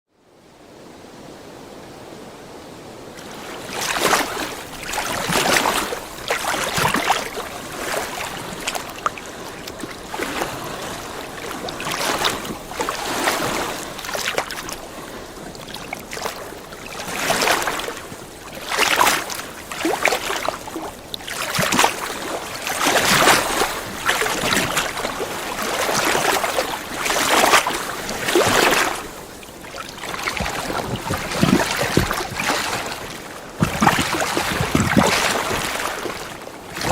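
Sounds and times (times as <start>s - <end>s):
waves lapping at shore: 0.4s - 36.9s
water trickles and drips: 3.2s - 36.9s.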